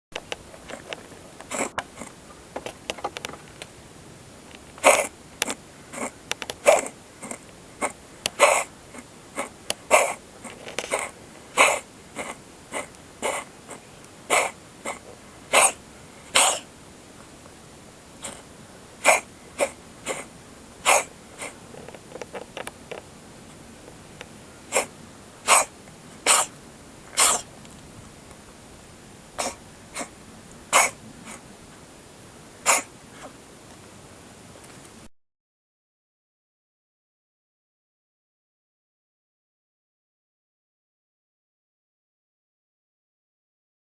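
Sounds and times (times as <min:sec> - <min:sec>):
cat coughing: 0:01.5 - 0:02.1, 0:04.8 - 0:16.7, 0:18.2 - 0:18.4, 0:19.0 - 0:21.6, 0:24.7 - 0:27.5, 0:29.4 - 0:30.1, 0:30.7 - 0:31.4, 0:32.6 - 0:33.3.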